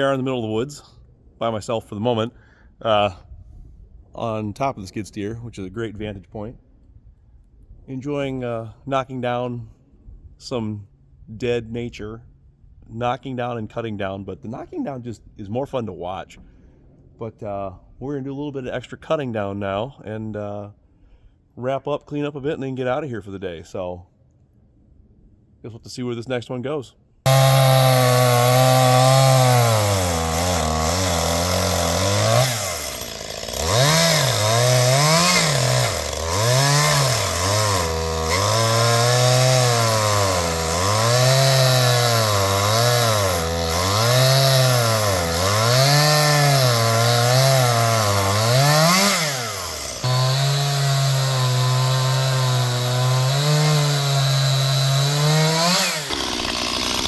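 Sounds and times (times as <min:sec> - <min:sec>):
chainsaw engine revving: 0:27.3 - 0:57.0.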